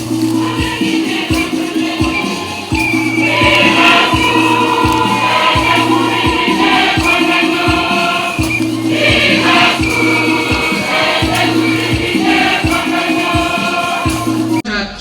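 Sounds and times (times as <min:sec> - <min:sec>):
steady low beat: 0:00.0 - 0:14.6
choir singing a hymn: 0:00.0 - 0:14.8.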